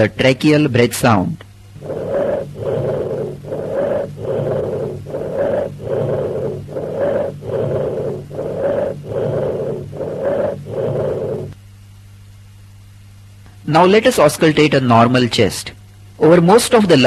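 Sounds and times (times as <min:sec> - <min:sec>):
breath rushing through windpipe: 0:01.8 - 0:11.6.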